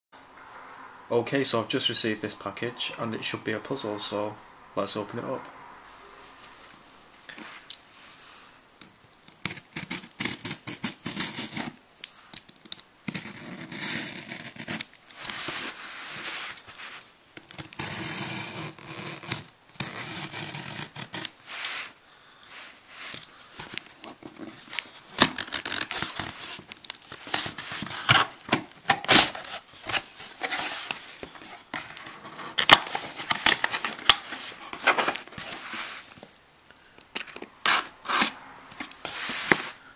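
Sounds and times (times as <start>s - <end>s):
packaging tearing and scraping: 9.3s - 36.3s, 37.2s - 39.8s
wrapping crackling: 19.0s - 36.4s.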